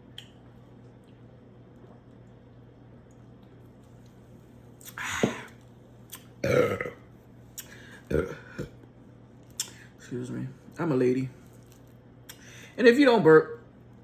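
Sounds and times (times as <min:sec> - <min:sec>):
woman burping: 0:06.4 - 0:07.0, 0:08.1 - 0:08.7.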